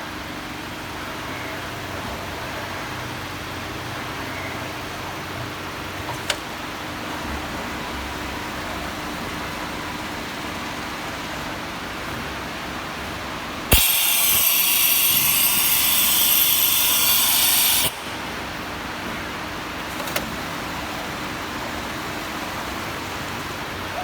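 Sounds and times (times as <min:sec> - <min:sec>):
click: 0:06.1 - 0:06.5, 0:13.7 - 0:18.0
loud even hiss: 0:13.7 - 0:19.0
machine humming: 0:13.7 - 0:19.9.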